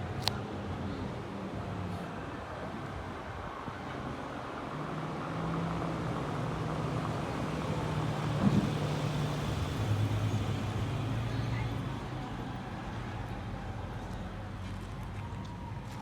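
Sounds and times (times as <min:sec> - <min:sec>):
road traffic hum: 0:00.0 - 0:16.0.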